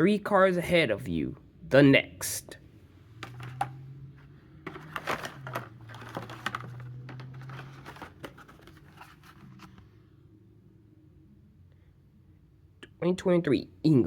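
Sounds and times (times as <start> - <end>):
low steady hum: 0.0 - 14.0
packaging crinkling and clicking: 4.7 - 9.8.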